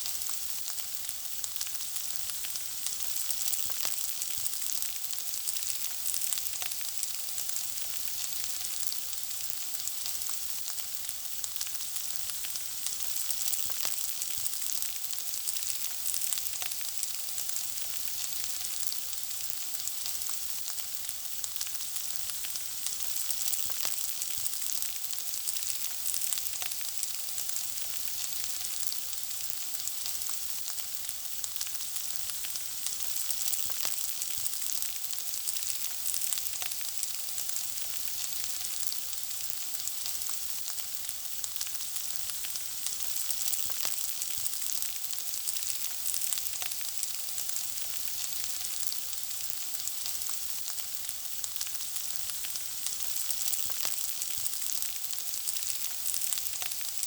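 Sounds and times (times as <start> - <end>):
food sizzling in hot oil: 0.0 - 57.0.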